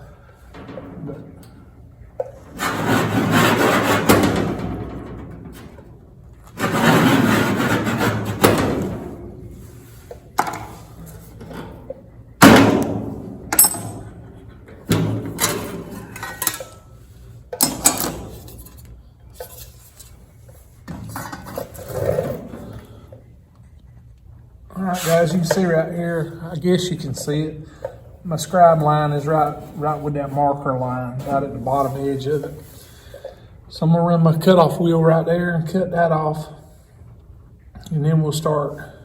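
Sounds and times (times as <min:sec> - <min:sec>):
scribe scraping sheet metal: 0:02.5 - 0:04.8, 0:06.5 - 0:09.9.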